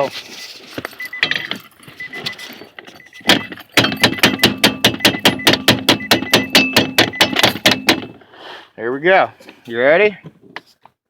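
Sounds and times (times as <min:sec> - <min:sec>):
hammer tapping on metal: 0:03.3 - 0:08.2.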